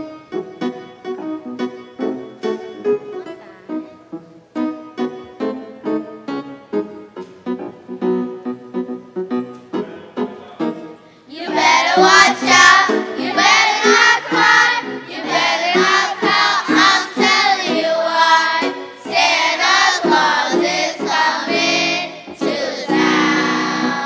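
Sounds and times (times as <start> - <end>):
keyboard accompaniment: 0.0 - 24.0
children's choir singing: 11.3 - 24.0.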